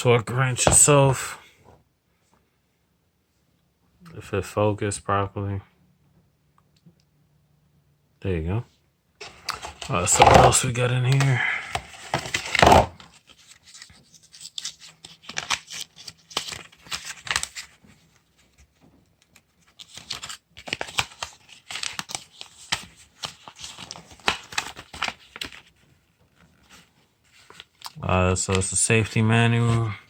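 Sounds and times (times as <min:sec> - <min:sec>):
packaging rustling and crinkling: 0:09.2 - 0:28.0.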